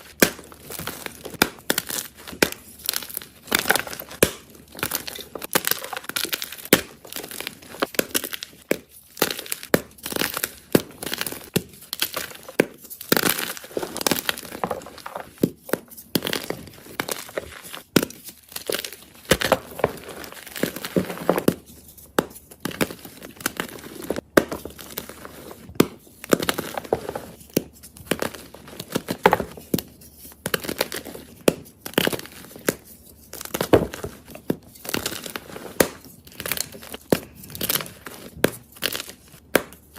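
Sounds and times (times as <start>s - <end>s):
chalk block crunching: 0.0s - 39.9s.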